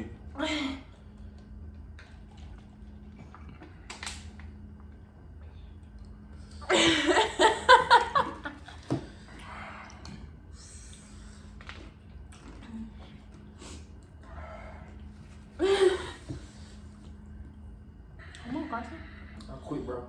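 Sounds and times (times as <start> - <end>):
person laughing: 6.7 - 8.8.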